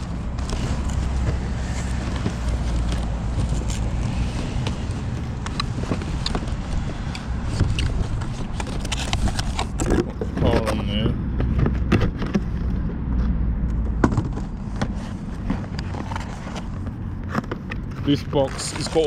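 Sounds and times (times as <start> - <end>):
packaging clicks and knocks: 0.0 - 12.6.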